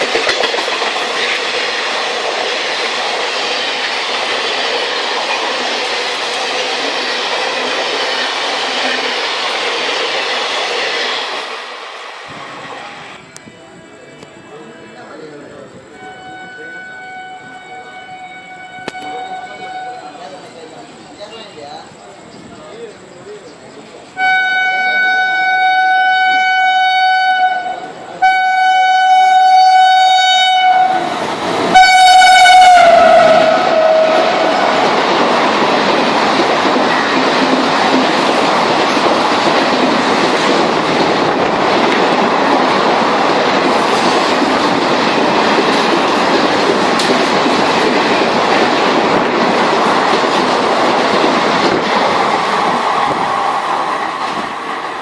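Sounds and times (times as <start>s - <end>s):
wheels clacking on rails: 0.0s - 11.8s, 30.9s - 55.0s
train horn blasts: 15.9s - 20.1s, 24.2s - 34.8s.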